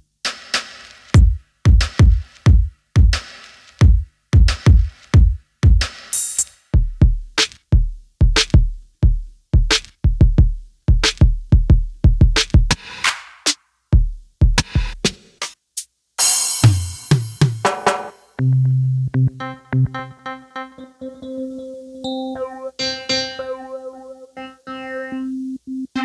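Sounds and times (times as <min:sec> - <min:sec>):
electronic kick drums: 0:00.3 - 0:06.0, 0:06.8 - 0:13.0, 0:14.0 - 0:15.3
snare hits: 0:16.2 - 0:18.2
cymbal crash: 0:16.2 - 0:18.4
keyboard chord: 0:18.5 - 0:26.0.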